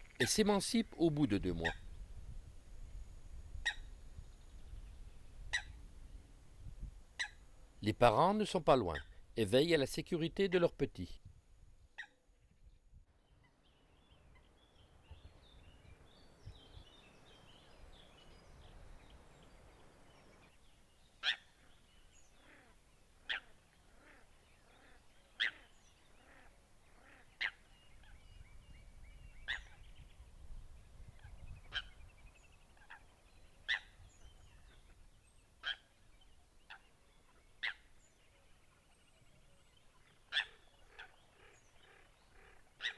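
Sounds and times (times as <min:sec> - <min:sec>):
faint high bird calls: 0:13.3 - 0:30.2, 0:31.0 - 0:42.9
coots calling: 0:40.2 - 0:42.9.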